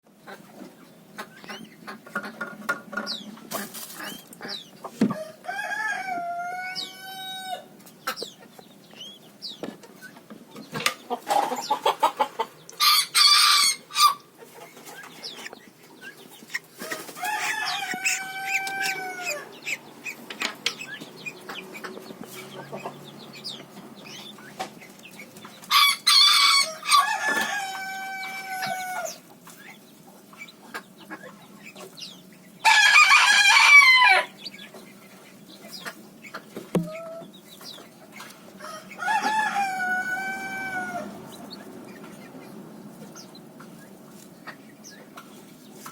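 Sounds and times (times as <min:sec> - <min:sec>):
chicken calls and cheeps: 0:03.0 - 0:45.9
rooster crowing: 0:05.2 - 0:07.7, 0:12.8 - 0:14.2, 0:17.2 - 0:19.5, 0:25.7 - 0:29.2, 0:32.6 - 0:34.3, 0:38.6 - 0:41.2.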